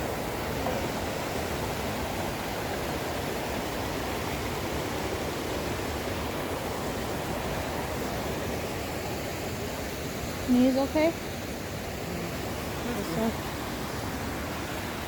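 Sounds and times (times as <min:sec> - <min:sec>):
creek water rushing: 0:00.0 - 0:15.0.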